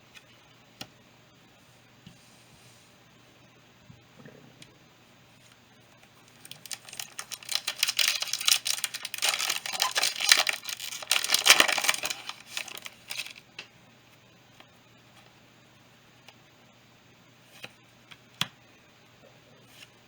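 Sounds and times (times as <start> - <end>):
foil wrapper crinkling and tearing: 6.3 - 13.5.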